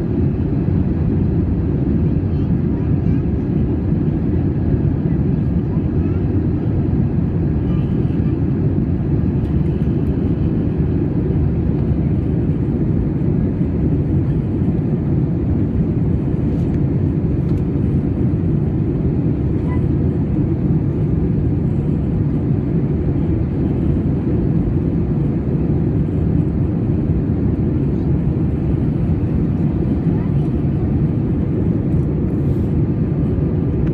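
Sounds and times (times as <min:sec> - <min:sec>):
airliner cabin engine drone: 0:00.0 - 0:33.9.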